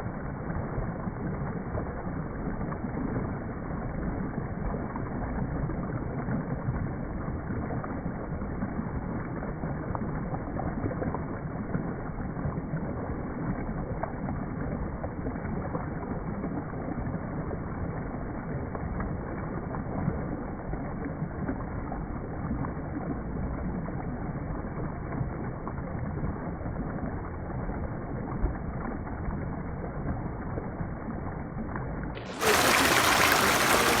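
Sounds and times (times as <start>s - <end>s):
water rushing: 32.2s - 34.0s.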